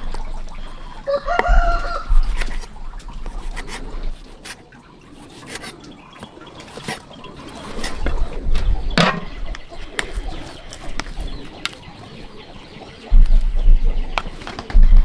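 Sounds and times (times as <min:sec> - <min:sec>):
rooster crowing: 0:01.0 - 0:02.2.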